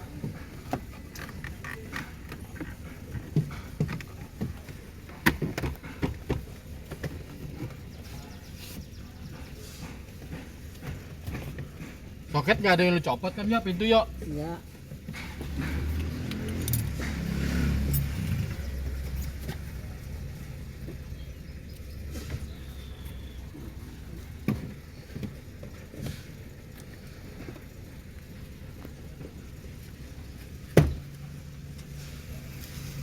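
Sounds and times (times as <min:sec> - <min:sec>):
car engine rumbling: 0:00.0 - 0:33.0
keys jangling: 0:16.3 - 0:17.2, 0:17.8 - 0:18.6.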